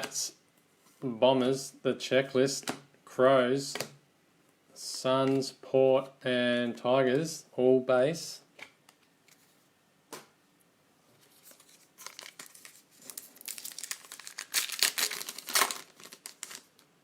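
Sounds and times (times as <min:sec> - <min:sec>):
foil wrapper tearing and crinkling: 0:11.6 - 0:16.8.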